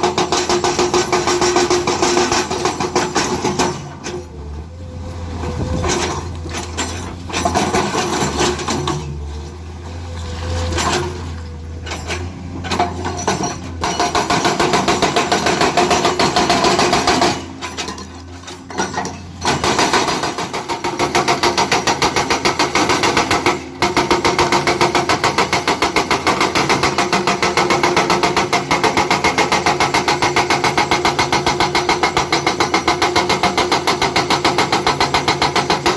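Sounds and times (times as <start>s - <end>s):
hydraulic breaker hammering: 0.0s - 4.2s, 11.8s - 35.9s
diesel construction machinery: 0.0s - 35.9s.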